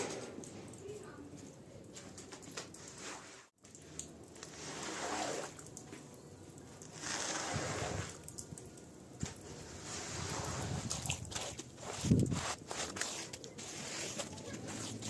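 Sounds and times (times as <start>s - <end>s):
water sloshing on wet rug: 2.4s - 6.1s, 6.8s - 15.0s.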